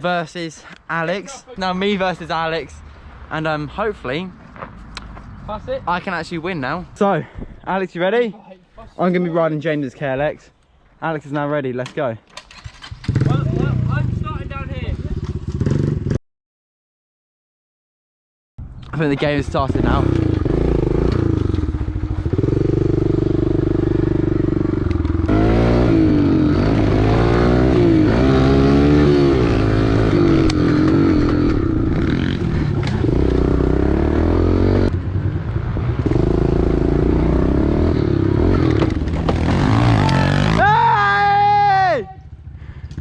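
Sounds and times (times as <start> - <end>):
small motorbike engine revving: 25.2 - 34.9, 36.0 - 40.8.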